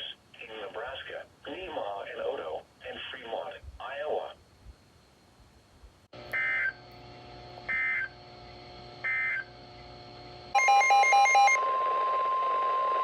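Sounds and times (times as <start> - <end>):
faint hum: 0.0 - 13.0
steady warning alarm tone: 6.3 - 6.8, 7.7 - 8.1, 9.0 - 9.5, 10.5 - 13.0
chirping data header tones: 10.6 - 11.6
short beeping: 10.6 - 11.6.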